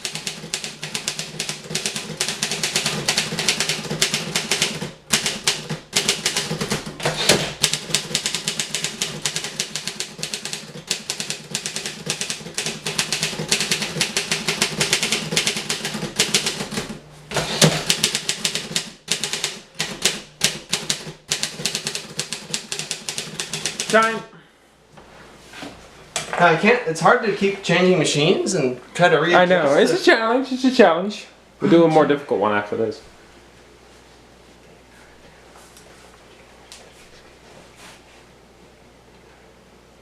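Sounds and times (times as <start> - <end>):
typewriter clattering: 0.0 - 24.2.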